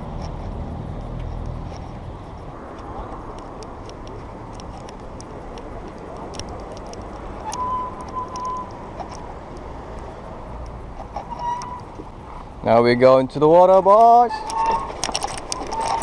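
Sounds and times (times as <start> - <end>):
wind and tyres rushing: 0.0 - 16.0
sharp clicks: 0.2 - 11.9
high whistling tone: 7.5 - 8.7.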